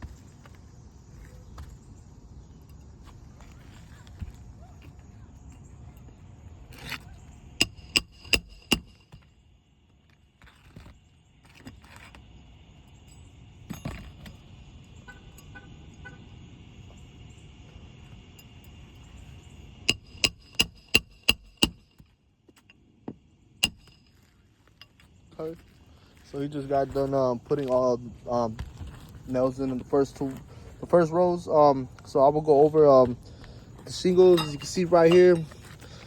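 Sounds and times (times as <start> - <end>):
hammer striking roofing nails: 7.6 - 9.3, 19.9 - 22.1, 23.6 - 24.0.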